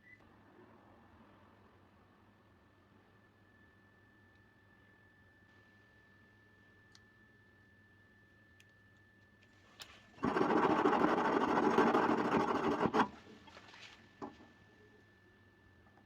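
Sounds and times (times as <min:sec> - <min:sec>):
small motor rattling buzz: 0:10.2 - 0:13.1.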